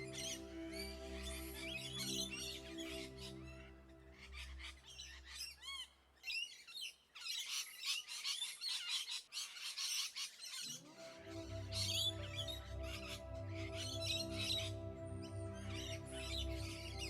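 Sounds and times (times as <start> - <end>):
background music: 0.0 - 5.4, 10.9 - 17.0.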